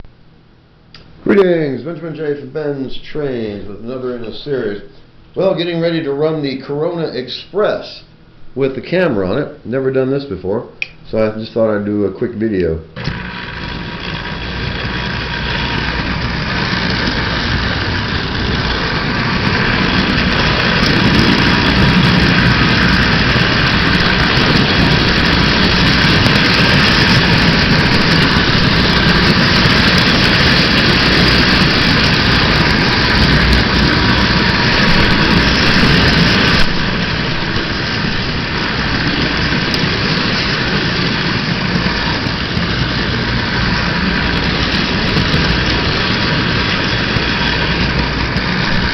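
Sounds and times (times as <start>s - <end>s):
model train motor and wheels rumbling: 11.1s - 48.9s.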